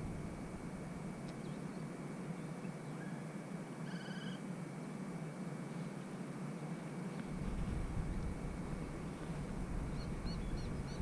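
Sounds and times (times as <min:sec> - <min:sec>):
outdoor background noise: 0:00.0 - 0:11.0
faint bird chirps: 0:01.3 - 0:04.5, 0:09.9 - 0:11.0
bird buzzy trilled call: 0:02.9 - 0:04.5.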